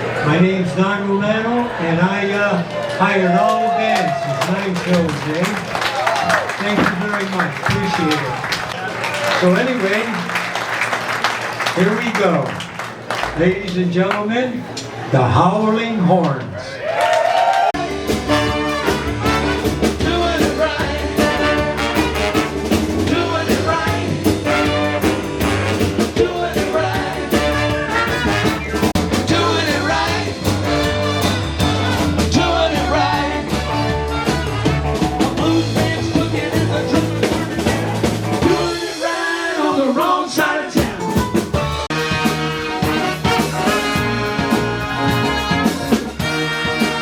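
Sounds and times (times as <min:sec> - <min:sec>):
drums: 0:02.8 - 0:10.2, 0:16.2 - 0:16.6, 0:17.5 - 0:47.0
bass line: 0:17.8 - 0:47.0
brass: 0:17.8 - 0:47.0.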